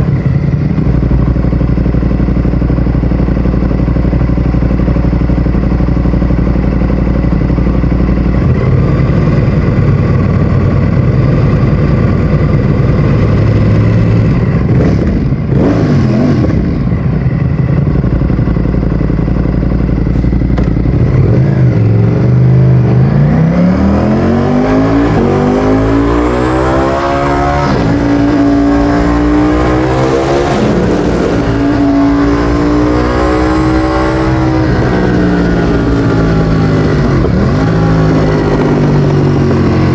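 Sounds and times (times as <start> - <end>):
motorcycle engine revving: 0.0 - 39.9
gear change: 10.9 - 39.8.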